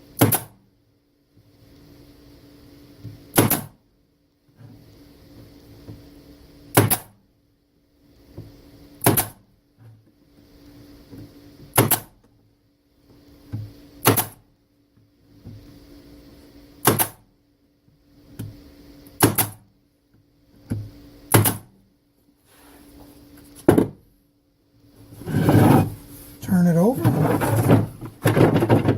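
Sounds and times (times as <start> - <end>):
faint steady hum: 0.0 - 28.9
staple gun firing into wood: 0.2 - 0.6, 3.3 - 3.8, 6.8 - 7.1, 9.0 - 9.4, 11.8 - 12.1, 14.0 - 14.4, 16.8 - 17.2, 19.2 - 19.6, 21.3 - 21.7
shuffle of work being positioned: 22.4 - 23.7, 25.0 - 28.9.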